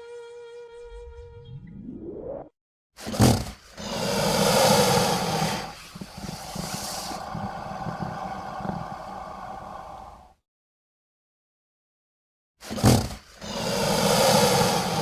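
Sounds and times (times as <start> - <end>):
alligator snorting breath: 3.5 - 10.4, 12.6 - 15.0
rough breath with clicks: 3.6 - 10.4.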